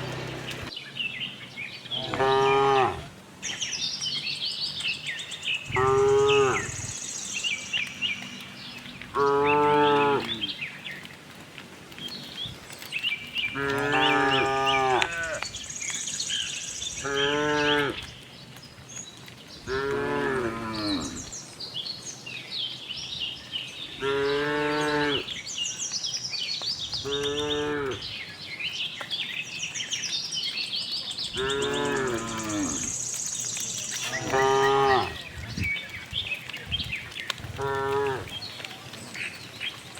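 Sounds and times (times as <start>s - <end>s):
birds chirping faintly: 0.0s - 39.9s
cattle mooing: 2.0s - 3.1s, 5.7s - 6.9s, 9.1s - 10.5s, 13.5s - 15.5s, 19.7s - 21.3s, 27.0s - 28.0s, 31.4s - 32.9s, 34.0s - 35.2s, 37.5s - 38.4s.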